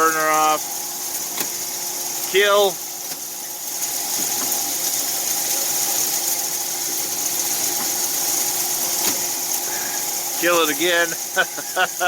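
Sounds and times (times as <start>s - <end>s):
drying machinery droning: 0.0s - 12.0s.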